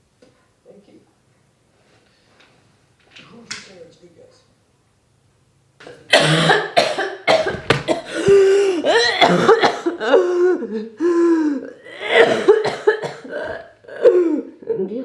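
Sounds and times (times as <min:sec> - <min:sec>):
woman coughing: 0:06.1 - 0:10.6, 0:11.9 - 0:14.5.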